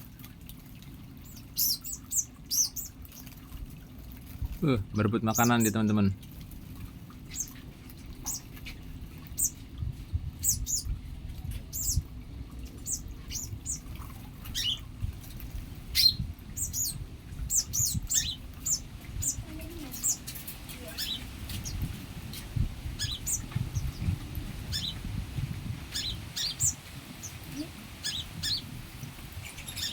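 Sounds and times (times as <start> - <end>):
birds giving short high chirps: 1.3 - 3.3, 8.2 - 8.5, 12.8 - 14.8, 16.0 - 20.3, 20.9 - 25.1, 25.9 - 27.4, 28.0 - 28.8, 29.4 - 29.9
low fluttering and bumping: 20.8 - 27.6.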